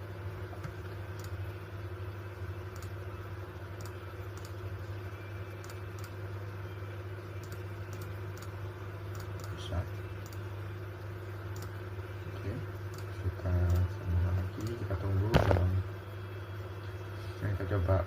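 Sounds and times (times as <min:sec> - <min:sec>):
low electrical hum: 0:00.0 - 0:18.0
computer clicks: 0:01.2 - 0:01.4, 0:02.7 - 0:03.0, 0:03.8 - 0:04.6, 0:05.6 - 0:06.2, 0:07.4 - 0:09.6, 0:10.2 - 0:10.4, 0:11.5 - 0:11.8.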